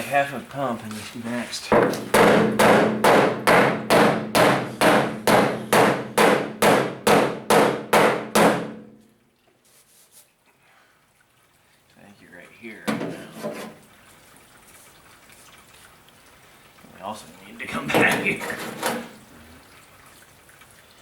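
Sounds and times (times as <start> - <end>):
hammer striking steel: 1.8 - 8.9.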